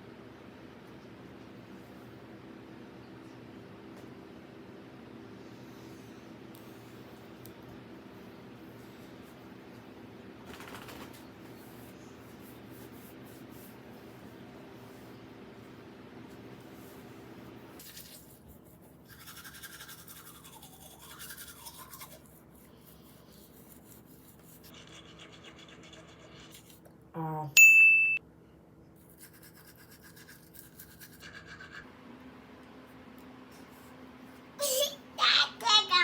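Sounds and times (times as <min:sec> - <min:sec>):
steady low hum: 0:00.0 - 0:36.0
sharp high-pitched tone: 0:27.6 - 0:28.2.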